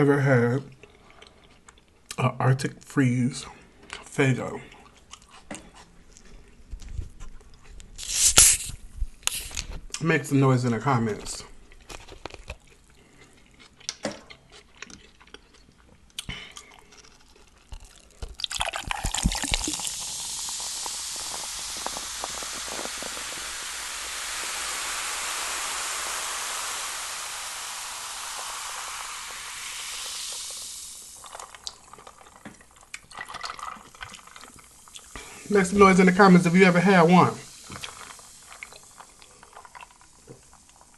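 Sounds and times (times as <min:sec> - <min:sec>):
soda fizzing: 0:08.0 - 0:12.6, 0:17.2 - 0:40.9.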